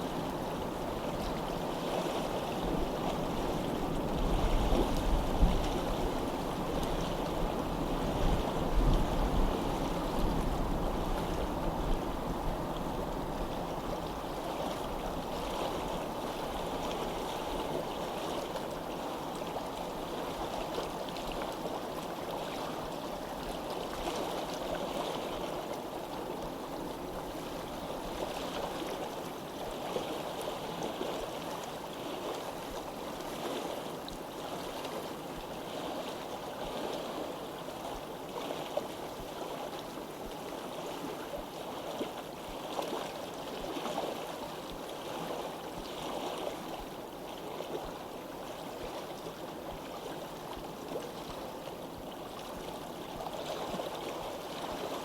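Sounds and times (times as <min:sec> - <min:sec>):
stream babbling: 0:00.0 - 0:55.0
water splashes and gurgles: 0:00.0 - 0:55.0.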